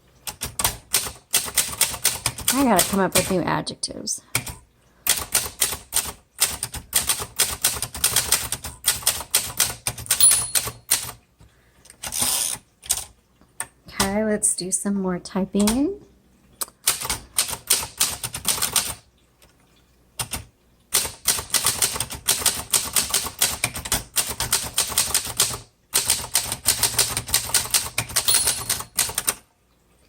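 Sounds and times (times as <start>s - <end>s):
typewriter keys clacking: 5.1s - 11.2s, 21.0s - 29.4s.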